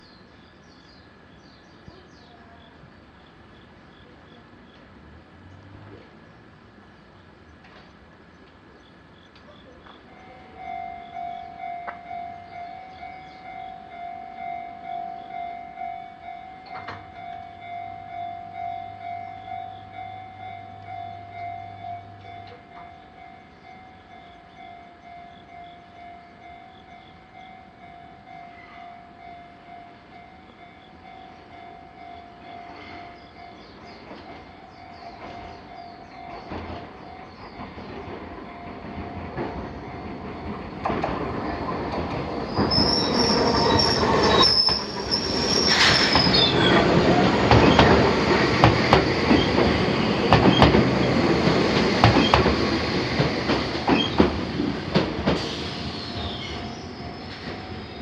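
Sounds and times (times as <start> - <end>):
level-crossing alarm bell: 10.0 - 41.3, 42.3 - 58.0
train wheels clattering: 32.1 - 58.0.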